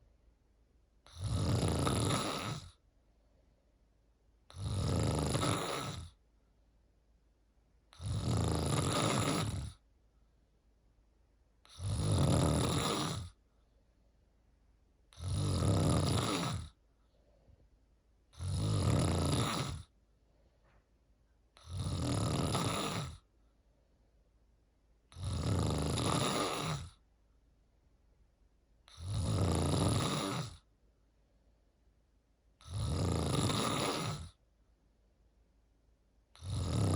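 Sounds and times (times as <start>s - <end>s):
person snoring: 1.1s - 2.8s, 4.5s - 6.2s, 7.9s - 9.8s, 11.6s - 13.4s, 15.1s - 16.8s, 18.4s - 19.9s, 21.6s - 23.3s, 25.1s - 27.0s, 28.9s - 30.6s, 32.6s - 34.4s, 36.3s - 36.9s.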